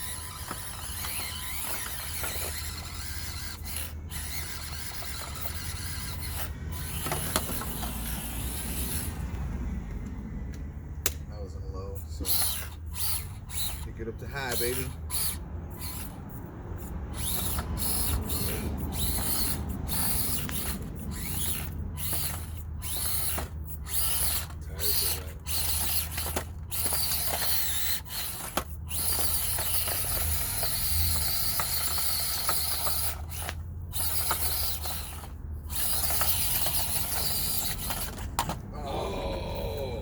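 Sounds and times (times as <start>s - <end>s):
small electric motors whining: 0.0s - 10.7s, 11.4s - 40.0s.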